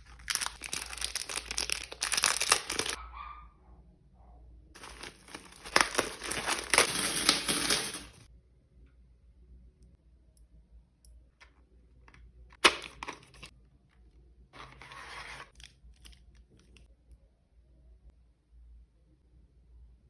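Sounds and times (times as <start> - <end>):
plastic packaging snapping: 0.0 - 3.0, 4.8 - 8.1
plastic rustling: 0.0 - 3.0, 4.8 - 8.2.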